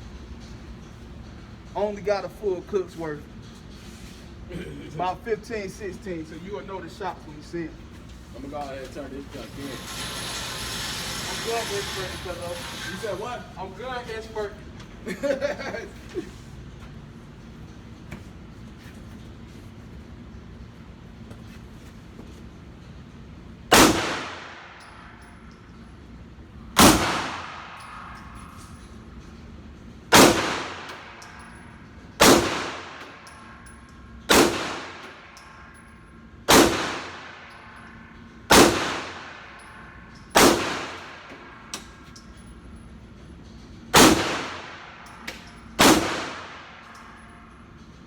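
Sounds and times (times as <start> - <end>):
pistol shots echoing: 23.7 - 24.8, 26.8 - 28.4, 30.1 - 31.4, 32.2 - 33.5, 34.3 - 35.4, 36.5 - 37.8, 38.5 - 39.7, 40.4 - 41.5, 44.0 - 47.2.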